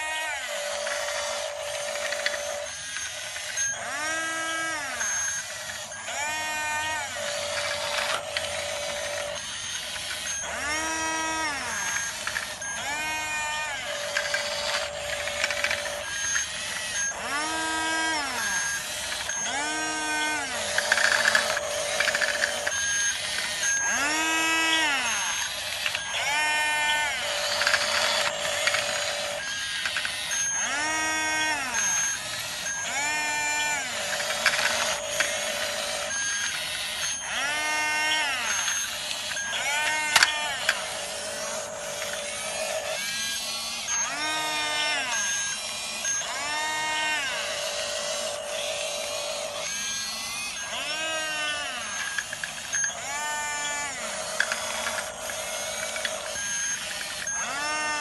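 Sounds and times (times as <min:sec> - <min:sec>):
electric motor whine: 0:00.0 - 0:58.0
gears and tracks clattering: 0:00.6 - 0:44.1, 0:47.6 - 0:58.0.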